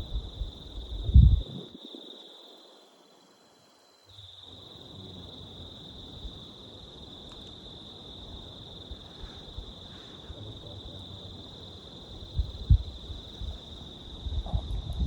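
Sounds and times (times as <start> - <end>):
low rumbling noise: 0.0 - 1.8
crickets chirping: 0.0 - 15.0
faint ticks: 7.2 - 7.6.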